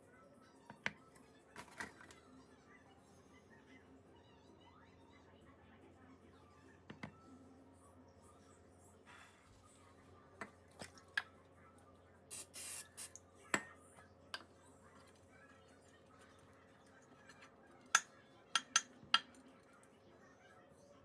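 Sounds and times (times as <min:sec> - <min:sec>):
short spray hiss: 0:12.3 - 0:13.1
clicks and taps of small objects: 0:17.9 - 0:19.5.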